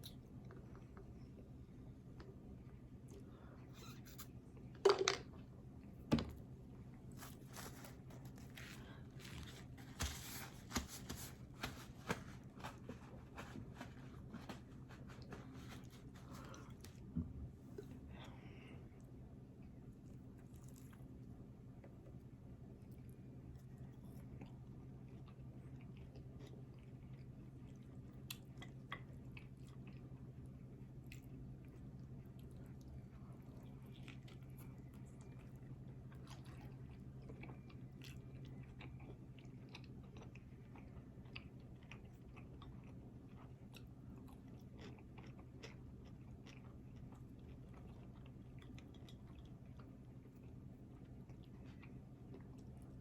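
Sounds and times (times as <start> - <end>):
steady low hum: 0.0 - 53.0
person chewing food: 6.9 - 17.1, 22.9 - 53.0.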